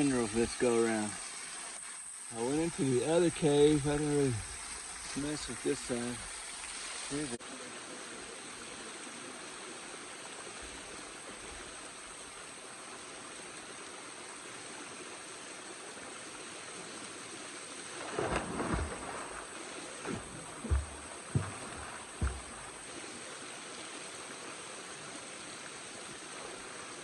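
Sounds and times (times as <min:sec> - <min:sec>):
waterfall rushing: 0:18.0 - 0:23.2
low bumps on microphone: 0:20.0 - 0:22.8.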